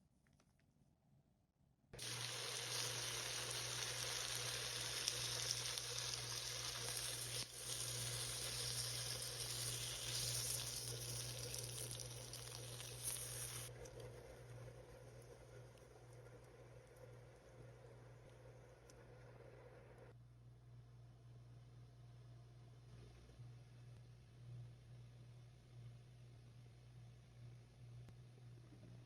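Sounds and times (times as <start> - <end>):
food sizzling in a pan: 2.0 - 13.7.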